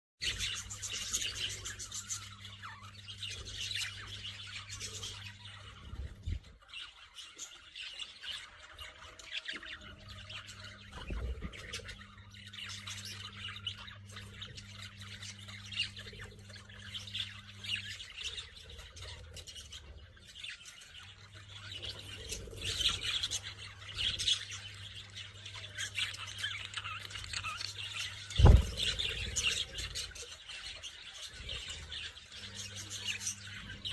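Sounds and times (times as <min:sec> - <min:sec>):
parrots squawking and chirping: 0:00.2 - 0:33.9
loud thump: 0:28.4 - 0:28.9.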